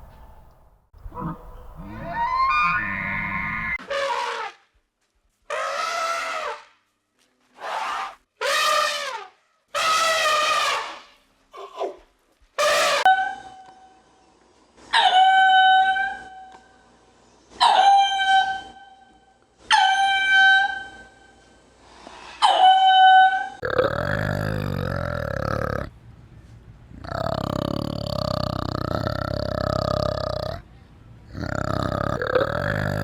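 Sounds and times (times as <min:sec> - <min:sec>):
animal calling: 0:01.0 - 0:03.8, 0:23.6 - 0:25.9, 0:27.0 - 0:30.7, 0:31.3 - 0:33.0.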